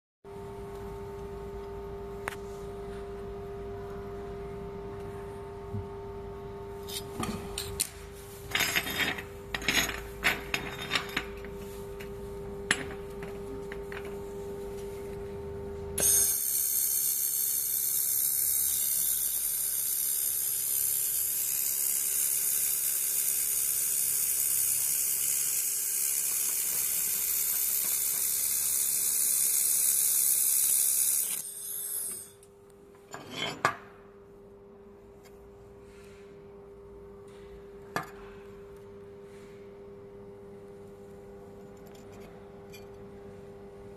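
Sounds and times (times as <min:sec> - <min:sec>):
laser welder high hiss: 0:16.0 - 0:32.3.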